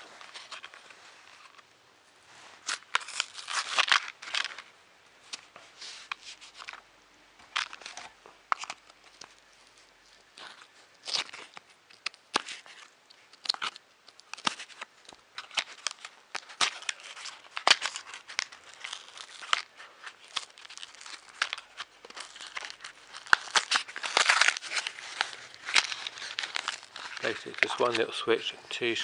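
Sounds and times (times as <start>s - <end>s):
plastic packaging crinkling: 0.0s - 1.7s, 2.5s - 6.8s, 7.4s - 29.0s.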